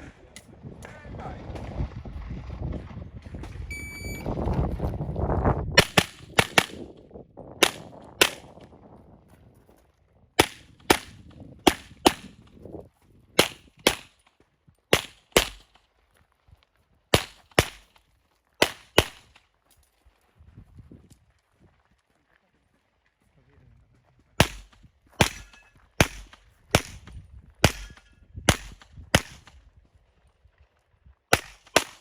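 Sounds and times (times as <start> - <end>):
handgun shots: 5.8 - 6.9, 13.4 - 14.2, 14.9 - 15.8, 17.1 - 18.0, 18.6 - 19.4, 24.4 - 29.5, 31.3 - 32.0.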